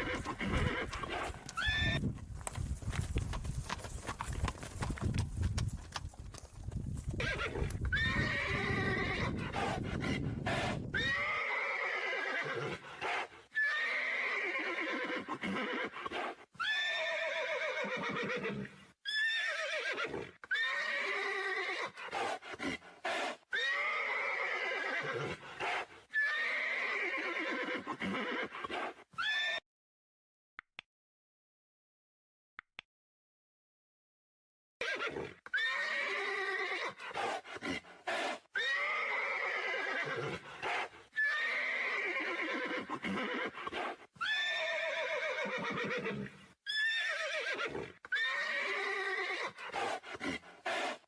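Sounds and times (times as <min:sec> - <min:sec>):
horses galloping: 0:00.0 - 0:09.4
horses neighing: 0:00.0 - 0:12.8, 0:13.6 - 0:16.0, 0:16.7 - 0:18.7, 0:23.6 - 0:25.4, 0:26.2 - 0:29.6, 0:38.6 - 0:40.4, 0:41.2 - 0:43.6, 0:44.2 - 0:49.6.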